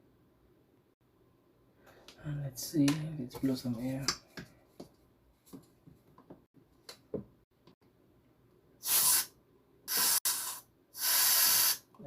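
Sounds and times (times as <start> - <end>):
hissing puffs of air: 8.8 - 11.9.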